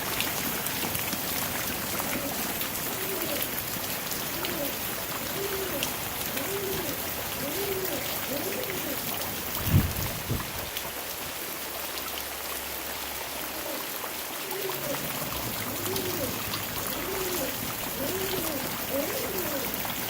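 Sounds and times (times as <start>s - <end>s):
steady rain falling: 0.0s - 20.0s
bird cooing: 1.8s - 9.1s, 13.4s - 19.9s.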